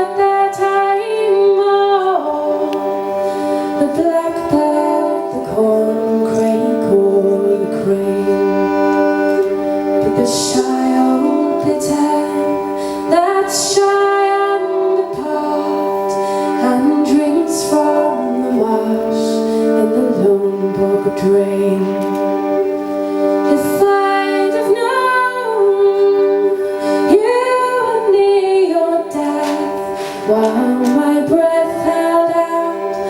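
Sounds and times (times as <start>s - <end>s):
woman singing: 0.0s - 22.6s, 23.4s - 33.0s
sustained folk chords: 0.0s - 33.0s.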